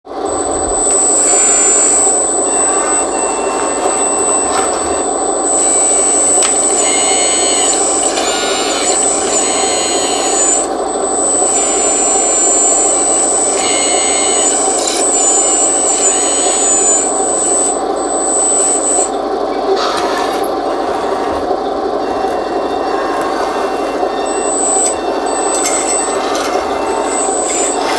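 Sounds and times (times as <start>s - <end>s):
harsh high whirring: 0.0s - 27.9s
toy loader motor whirring: 0.2s - 27.9s
high thin whine: 0.3s - 27.9s.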